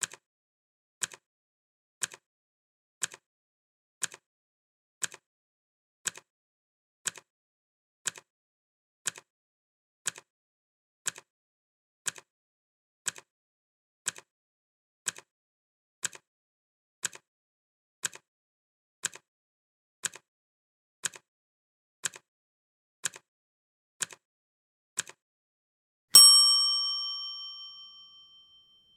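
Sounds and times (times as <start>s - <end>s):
loud bell ding: 26.2s - 28.4s.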